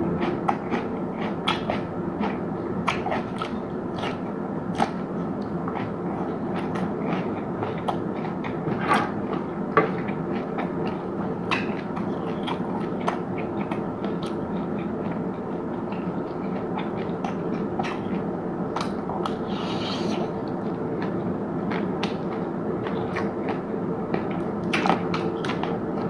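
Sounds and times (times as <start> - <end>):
steady low background noise: 0.0 - 26.0
wet chewing: 0.2 - 26.0.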